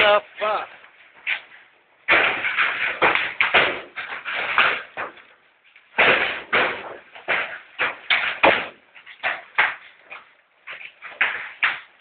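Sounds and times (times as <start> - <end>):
hailstones striking a roof: 2.1 - 10.2.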